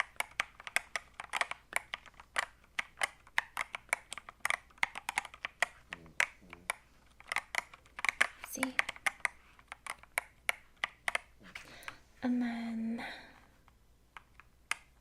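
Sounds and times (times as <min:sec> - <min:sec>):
mechanical keyboard clacks: 0:00.0 - 0:11.3.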